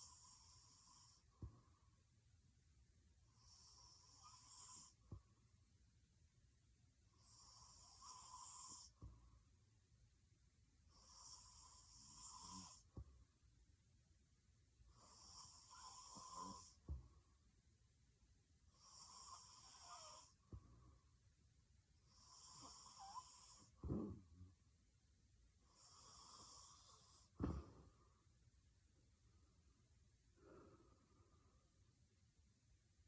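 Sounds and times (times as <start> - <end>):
woman snoring: 3.4 - 5.0, 7.2 - 9.0, 11.0 - 12.9, 15.0 - 16.8, 18.8 - 20.4, 22.1 - 24.1, 25.7 - 27.6.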